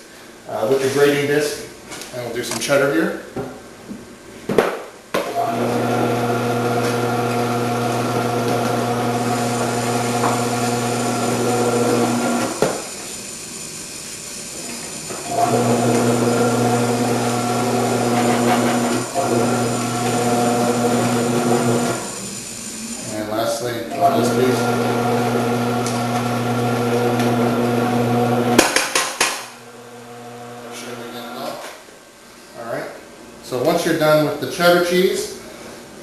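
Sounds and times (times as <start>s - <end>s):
vegetable cutter motor humming: 5.4s - 23.3s, 23.9s - 28.6s, 29.7s - 31.1s.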